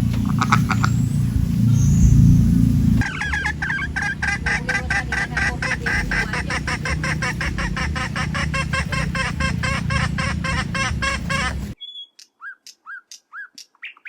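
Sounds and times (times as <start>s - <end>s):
geese honking: 0.0s - 1.8s, 2.9s - 11.8s
low steady rumble: 0.0s - 11.8s.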